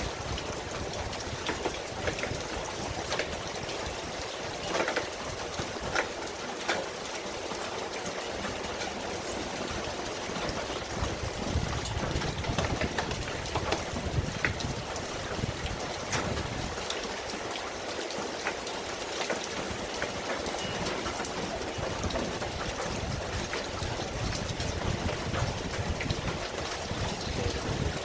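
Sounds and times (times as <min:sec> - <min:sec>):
raindrops ticking on surfaces: 0:00.0 - 0:28.0
steady rain falling: 0:00.0 - 0:28.0.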